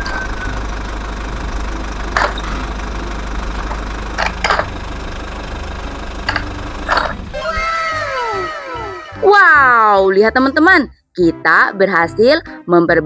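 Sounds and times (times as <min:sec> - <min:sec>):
low engine-like rumble: 0:00.0 - 0:09.3.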